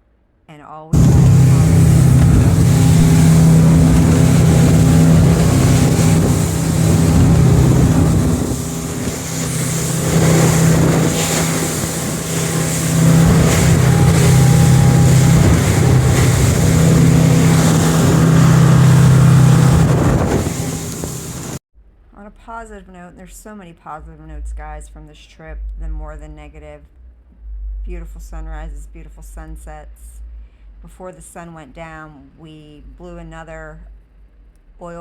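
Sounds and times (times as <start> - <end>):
motorboat engine droning: 1.0 - 21.6
water rushing past hull: 1.0 - 21.6
wind buffeting microphone: 1.0 - 21.6.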